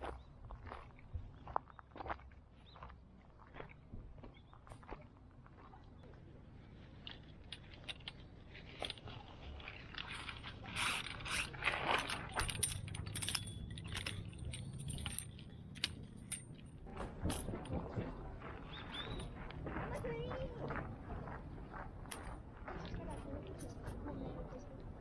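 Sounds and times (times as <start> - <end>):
metal clinks and scrapes: 7.1 - 17.5.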